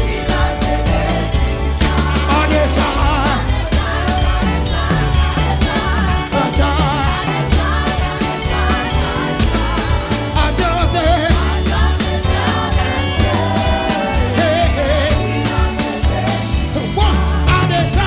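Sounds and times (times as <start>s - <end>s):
choir singing: 0.0s - 18.0s
gospel church band playing: 0.0s - 18.0s
pulsing bass: 0.0s - 18.0s.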